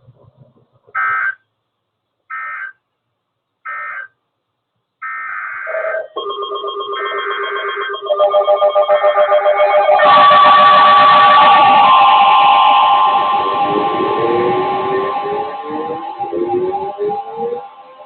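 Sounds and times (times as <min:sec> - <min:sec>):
digital data tone bursts: 0:05.6 - 0:18.0
pulsing electronic tones: 0:05.7 - 0:18.0.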